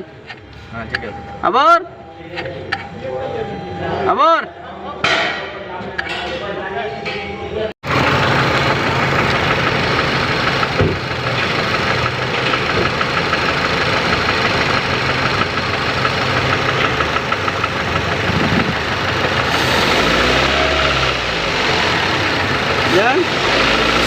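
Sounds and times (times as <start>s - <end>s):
engine misfiring and knocking: 7.8s - 24.0s.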